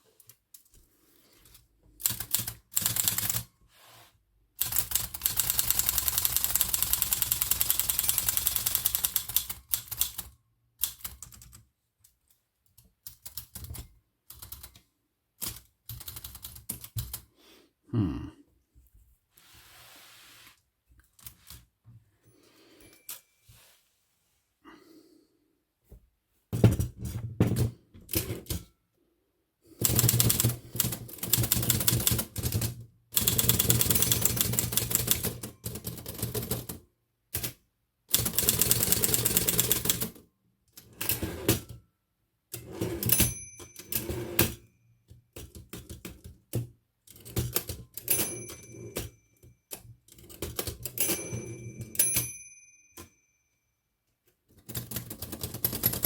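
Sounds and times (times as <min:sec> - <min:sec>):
typewriter clattering: 0:04.6 - 0:11.5, 0:29.8 - 0:36.7, 0:38.1 - 0:40.2, 0:54.6 - 0:56.0
typewriter bell ringing: 0:05.2 - 0:09.4, 0:33.2 - 0:36.6, 0:42.8 - 0:44.6, 0:48.0 - 0:49.7, 0:50.7 - 0:53.6.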